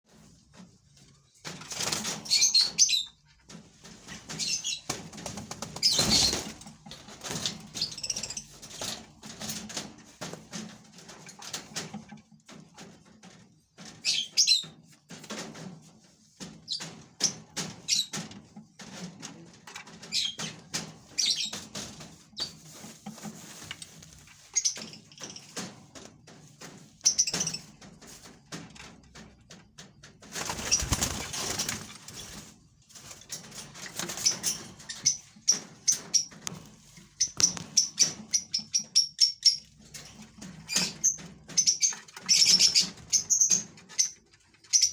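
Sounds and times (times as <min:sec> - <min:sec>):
wing flapping: 0:03.8 - 0:10.7, 0:30.2 - 0:36.1.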